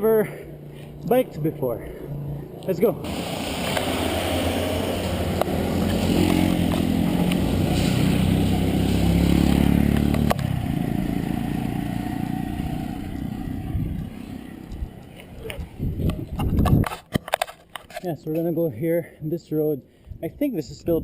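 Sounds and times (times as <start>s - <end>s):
motorcycle engine running: 3.0s - 16.4s.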